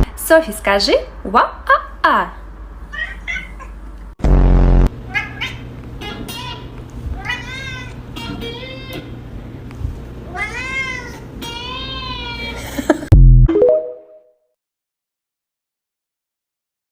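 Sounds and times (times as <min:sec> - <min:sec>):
cat meowing: 0:02.9 - 0:03.8, 0:05.1 - 0:09.1, 0:10.3 - 0:12.5
loud low buzzing burst: 0:04.2 - 0:05.1.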